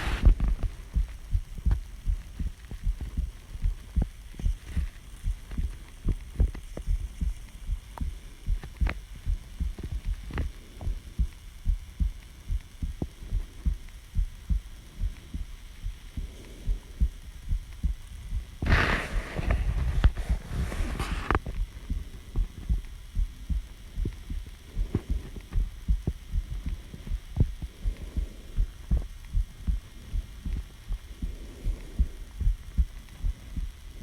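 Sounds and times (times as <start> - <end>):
heartbeat thumps: 0.0 - 34.0
breathing: 16.1 - 17.0, 18.6 - 21.4, 27.7 - 29.1, 29.7 - 33.6.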